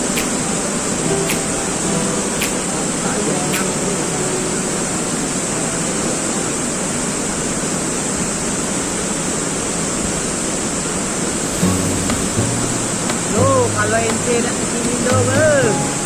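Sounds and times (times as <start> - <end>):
waterfall pouring: 11.2 - 16.0.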